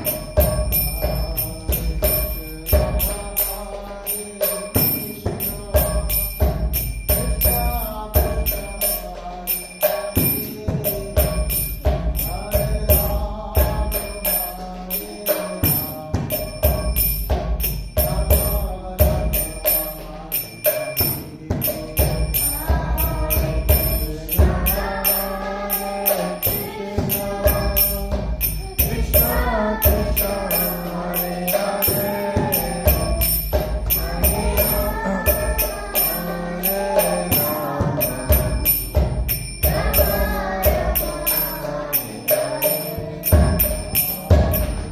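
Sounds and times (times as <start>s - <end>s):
jingling percussion: 0.0s - 44.9s
voices singing a chant: 0.0s - 44.9s
low drum beat: 26.8s - 31.1s, 32.0s - 36.0s, 37.6s - 41.9s.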